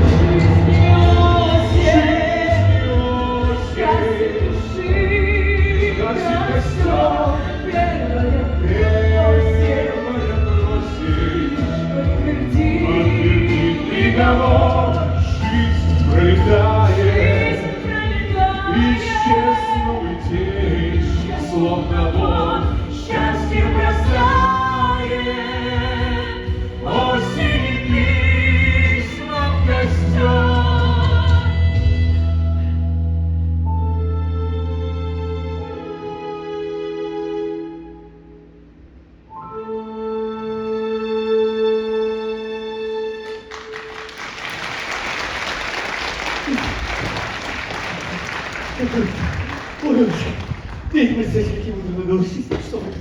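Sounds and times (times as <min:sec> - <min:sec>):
audience applause: 0:43.2 - 0:51.7.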